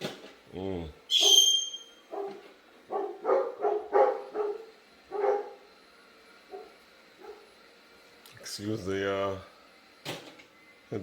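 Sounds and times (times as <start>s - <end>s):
dog barking: 1.2s - 5.6s, 6.5s - 7.5s.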